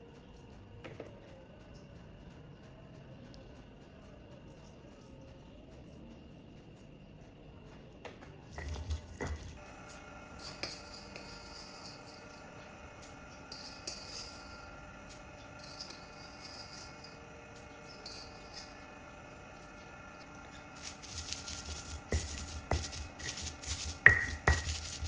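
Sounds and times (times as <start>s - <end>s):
utensils knocking and clicking: 20.8s - 25.0s.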